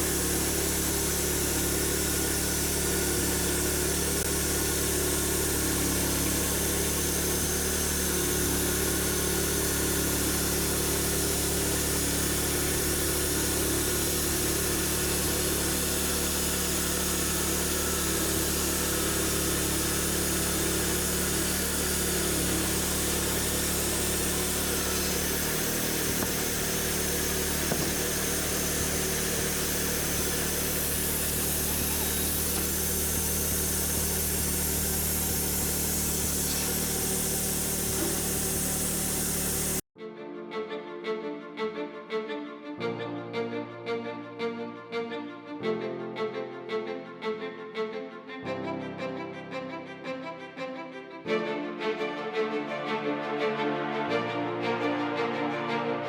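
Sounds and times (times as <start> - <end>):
saw cutting through log: 0.0 - 39.9
sawmill engine running: 0.0 - 39.9, 51.4 - 56.0.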